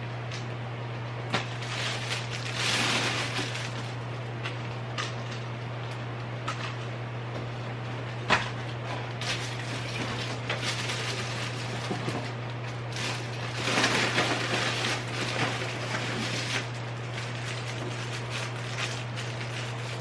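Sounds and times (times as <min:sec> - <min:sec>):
steady low hum: 0:00.0 - 0:20.0
objects rustling: 0:01.3 - 0:05.4, 0:08.9 - 0:20.0.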